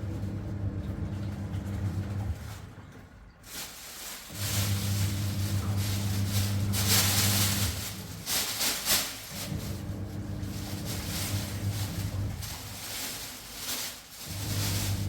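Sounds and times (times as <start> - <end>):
machine humming: 4.3 - 8.3, 9.3 - 12.9.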